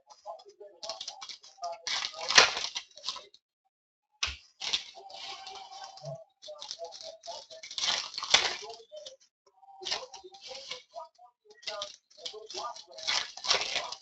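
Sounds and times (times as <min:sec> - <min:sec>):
cards being shuffled: 0:00.8 - 0:03.2, 0:04.2 - 0:06.0, 0:06.6 - 0:09.1, 0:09.8 - 0:10.9, 0:11.6 - 0:14.0
foil wrappers crinkling: 0:00.8 - 0:03.3, 0:04.2 - 0:09.1, 0:09.8 - 0:14.0.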